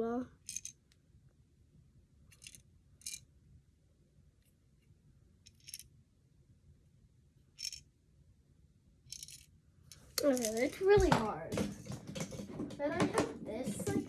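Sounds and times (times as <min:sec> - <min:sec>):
small ball rattling in toy: 0:00.4 - 0:00.8, 0:09.1 - 0:14.0.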